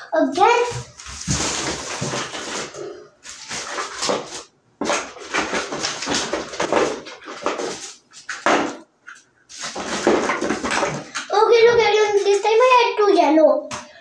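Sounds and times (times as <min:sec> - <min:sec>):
plastic blocks clattering: 0:00.7 - 0:08.8, 0:09.5 - 0:11.3.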